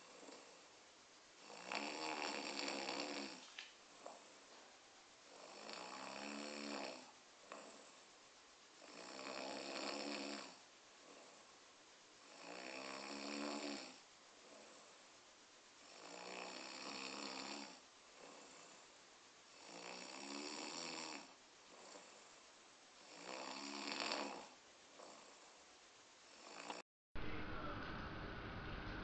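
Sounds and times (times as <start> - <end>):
person snoring: 0.0 - 0.7, 1.4 - 3.4, 5.2 - 8.0, 8.8 - 11.5, 12.2 - 15.0, 15.8 - 18.9, 19.5 - 22.3, 23.0 - 25.6, 26.3 - 26.8
quiet breathing: 0.0 - 26.8.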